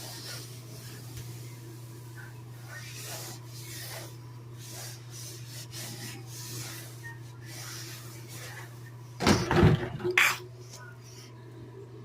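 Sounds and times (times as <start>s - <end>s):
rubbing strokes on drywall ceiling: 0.0s - 8.9s
steady low hum: 0.0s - 12.0s.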